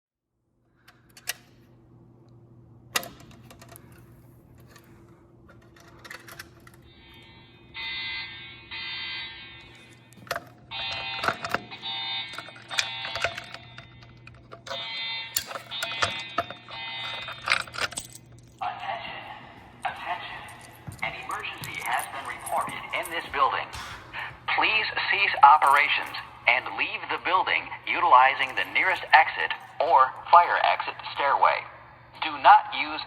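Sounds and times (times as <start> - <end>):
steady low hum: 0.5 - 32.4
pitched alarm tone: 6.8 - 18.0, 18.6 - 23.8.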